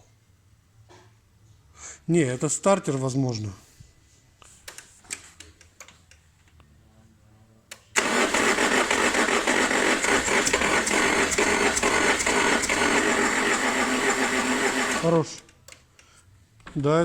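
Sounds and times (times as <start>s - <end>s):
car engine starting: 7.9s - 15.2s.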